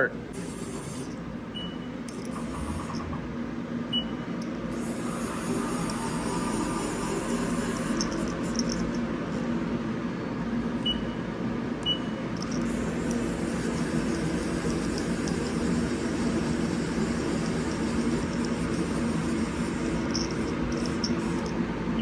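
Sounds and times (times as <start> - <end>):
shop ventilation hum: 0.0 - 22.0
cnc mill humming: 12.4 - 22.0.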